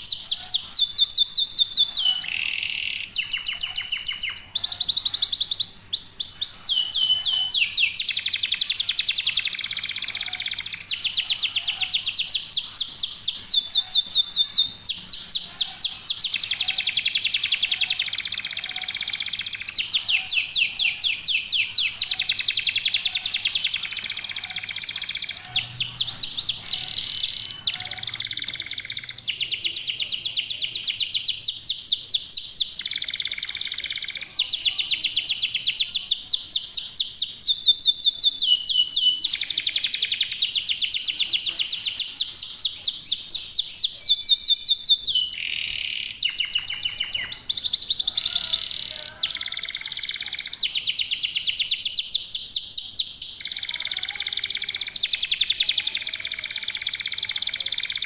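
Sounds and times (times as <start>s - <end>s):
canary singing trills: 0.0s - 58.0s.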